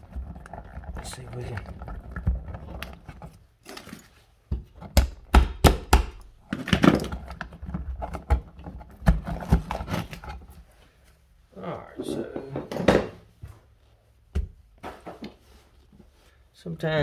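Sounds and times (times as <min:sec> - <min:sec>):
knocks and thunks on electrical box: 0:04.6 - 0:07.0.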